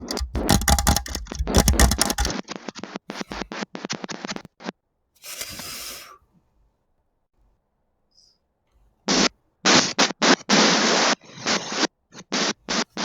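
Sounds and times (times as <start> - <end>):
rapid tapping clicks: 0.0 - 2.4
static hiss: 9.1 - 13.0.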